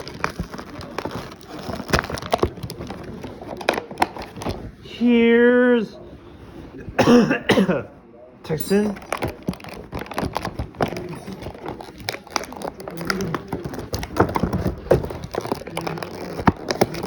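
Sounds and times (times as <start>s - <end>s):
plastic packaging crackling: 0.0s - 4.7s, 8.7s - 17.0s.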